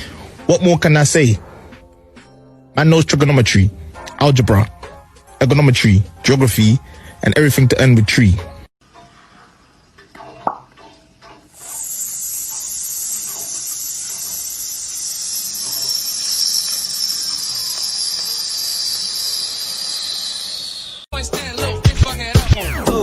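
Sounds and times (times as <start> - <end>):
high-pitched hiss sinking in pitch: 11.6 - 21.1.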